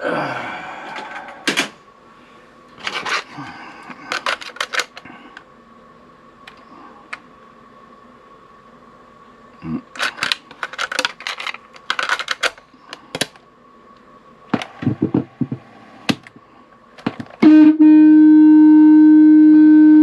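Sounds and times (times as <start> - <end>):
loud distorted steady tone: 14.5 - 20.0.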